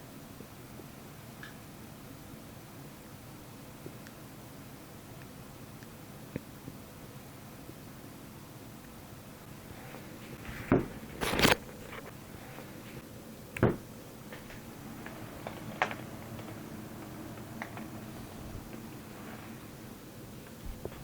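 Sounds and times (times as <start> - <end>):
low steady hum: 0.0 - 21.0.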